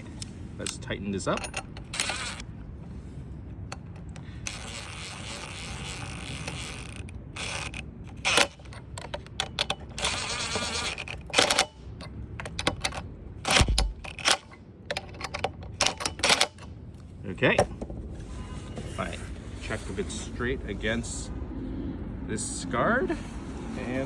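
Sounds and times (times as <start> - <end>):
metal hardware clinking: 0.0 - 2.4
sharp metal clicks and knocks: 0.0 - 2.5, 3.7 - 18.1.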